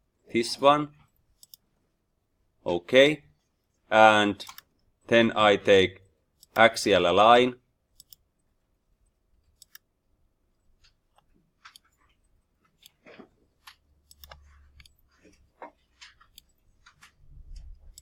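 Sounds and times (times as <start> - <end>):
computer mouse clicks: 1.4 - 1.6, 4.4 - 4.8, 6.4 - 6.7, 8.0 - 8.3, 9.4 - 9.9, 10.8 - 13.0, 13.6 - 18.0.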